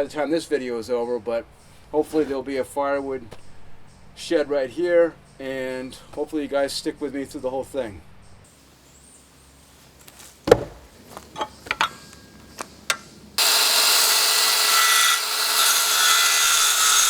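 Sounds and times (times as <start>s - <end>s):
wood knocks and taps: 10.5s - 10.9s
power saw cutting wood: 12.9s - 17.0s.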